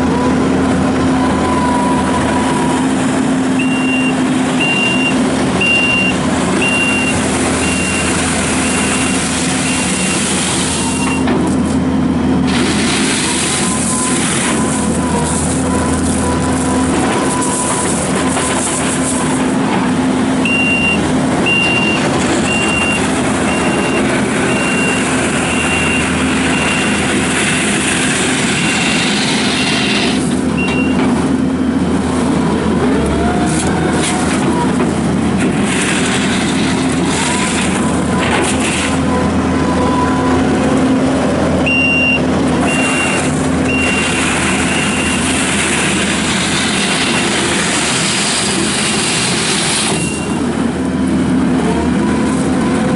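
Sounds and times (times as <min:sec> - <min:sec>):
diesel engine running: 0:00.0 - 0:52.9
reversing alarm beeping: 0:00.3 - 0:11.6, 0:12.2 - 0:19.4, 0:20.3 - 0:32.1, 0:38.9 - 0:46.0, 0:49.8 - 0:51.4.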